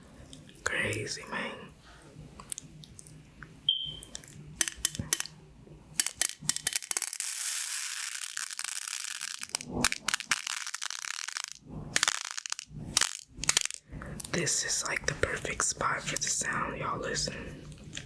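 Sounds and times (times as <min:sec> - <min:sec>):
toy pins clicking: 0:06.0 - 0:13.8.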